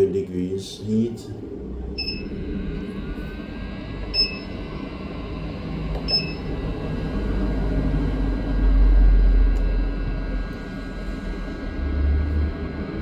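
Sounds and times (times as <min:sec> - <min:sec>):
short beeps: 0:02.0 - 0:02.3, 0:04.1 - 0:04.6, 0:06.1 - 0:06.4.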